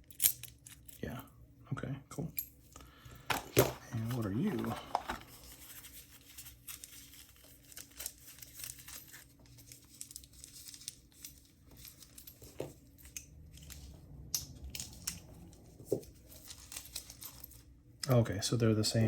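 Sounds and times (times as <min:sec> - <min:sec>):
packaging crinkling and tearing: 0:04.1 - 0:11.2.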